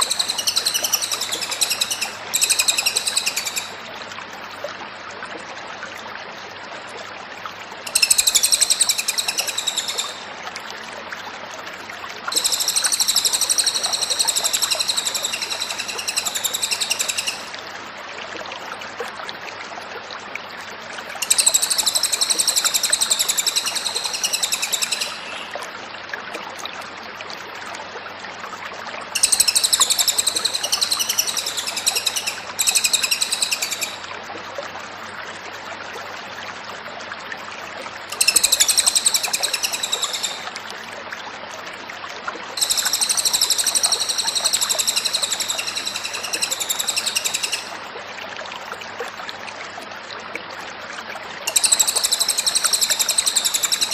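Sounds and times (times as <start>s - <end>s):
bird high-pitched trilling: 0.0s - 3.8s, 7.9s - 10.2s, 12.3s - 17.5s, 21.2s - 25.5s, 29.2s - 34.0s, 38.2s - 40.4s, 42.6s - 47.8s, 51.5s - 53.9s.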